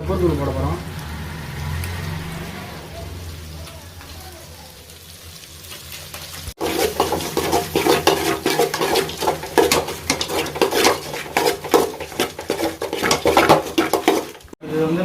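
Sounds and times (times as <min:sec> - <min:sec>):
chicken frying in oil: 0:00.1 - 0:14.6
ladle scraping a cooking pan: 0:06.1 - 0:14.6.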